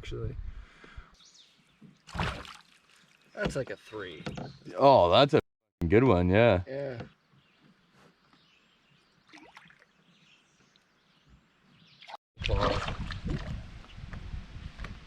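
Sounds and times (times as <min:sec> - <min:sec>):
loud water splashing: 0:02.1 - 0:03.1, 0:12.4 - 0:13.5.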